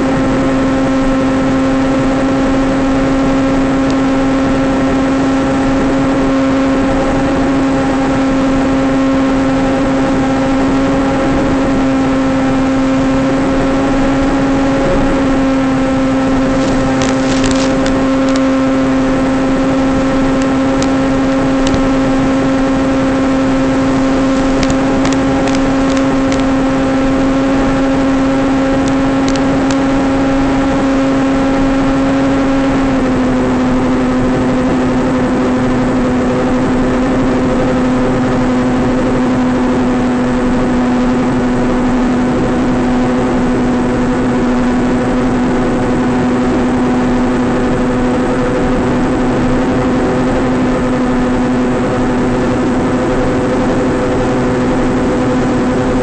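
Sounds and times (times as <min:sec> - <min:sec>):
electric motor and propeller drone: 0:00.0 - 0:56.0
brief crackles: 0:16.6 - 0:18.4.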